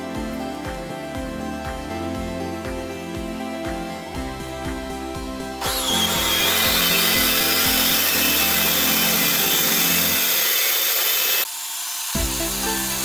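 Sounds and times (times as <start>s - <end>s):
background music: 0.0s - 10.6s, 12.2s - 13.0s
power tool cutting wood: 5.6s - 13.0s.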